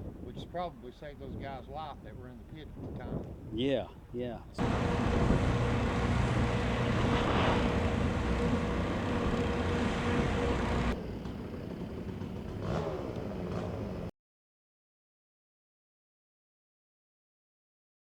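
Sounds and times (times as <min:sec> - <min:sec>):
low hum: 0:04.6 - 0:12.1
engine running: 0:04.6 - 0:14.1.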